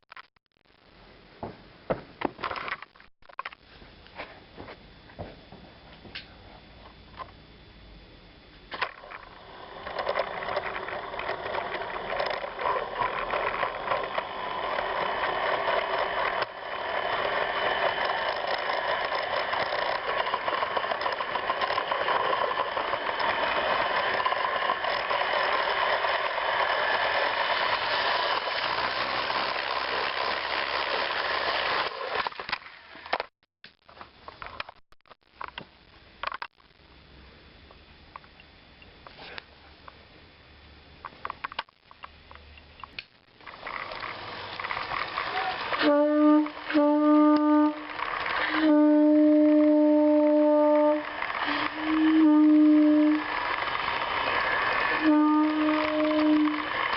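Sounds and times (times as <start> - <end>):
wheels rattling over rails: 8.7 - 33.2, 43.4 - 56.9
toy train motor whirring: 8.8 - 33.2, 43.4 - 56.9.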